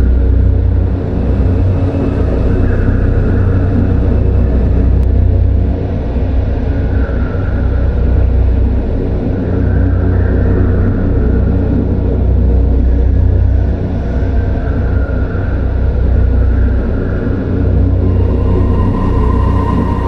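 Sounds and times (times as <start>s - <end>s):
dark drone: 0.0s - 20.0s
deep steady rumble: 0.0s - 20.0s
eerie high tones: 16.7s - 20.0s.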